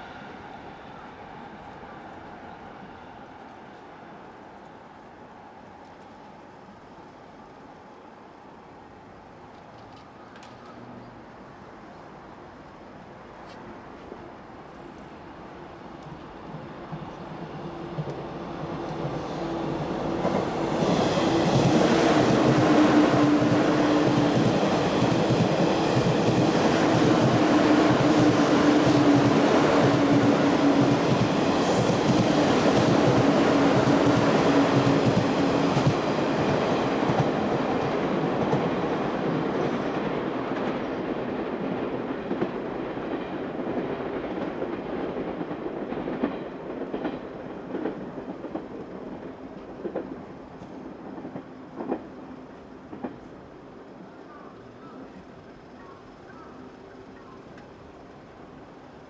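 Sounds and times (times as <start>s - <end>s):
train wheels clattering over rails: 16.8s - 53.9s.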